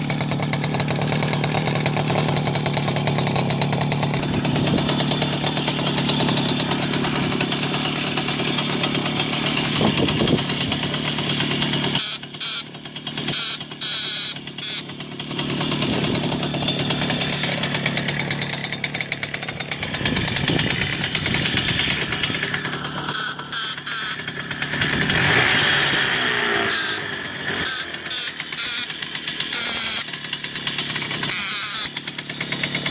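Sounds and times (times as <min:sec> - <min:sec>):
moped engine running: 0:00.0 - 0:32.9
moped horn blasts: 0:11.8 - 0:15.0, 0:20.2 - 0:30.2, 0:31.2 - 0:32.0.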